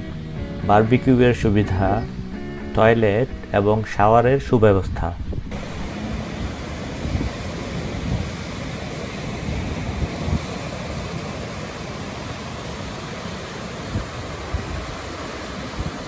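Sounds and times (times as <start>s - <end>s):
wind buffeting microphone: 0.0s - 16.0s
ocean surf washing in: 5.2s - 16.0s.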